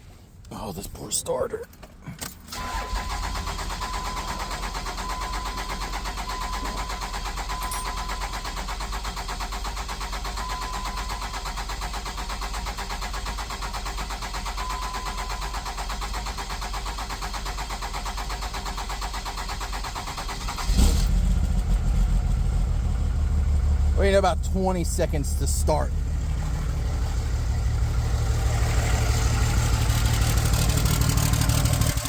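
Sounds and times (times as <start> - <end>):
starter motor cranking: 2.5 - 21.5, 29.5 - 32.0
diesel engine running: 2.5 - 32.0.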